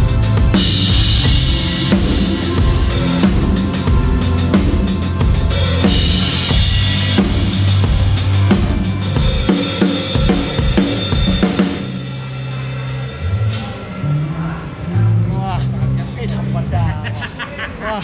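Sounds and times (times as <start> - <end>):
drum kit playing: 0.0 - 14.1
backing track: 0.0 - 17.8.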